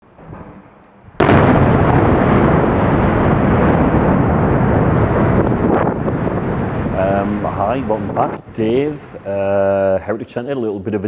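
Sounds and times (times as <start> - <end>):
media blaster rushing blast: 1.2 - 9.3.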